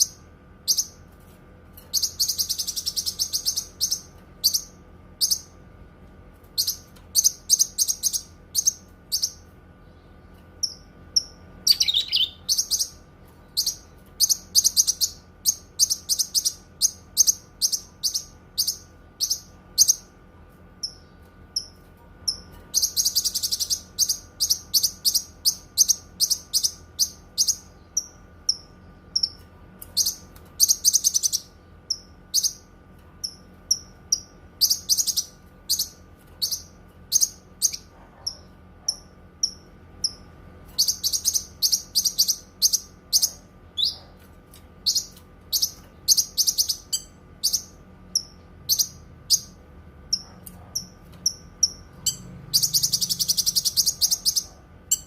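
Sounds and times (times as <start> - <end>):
songbird chirping: 1.9 - 5.6, 6.6 - 20.1.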